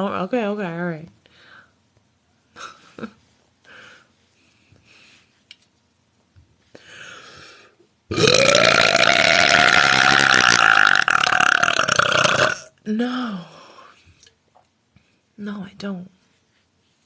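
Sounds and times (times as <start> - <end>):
woman burping: 8.1 - 12.7.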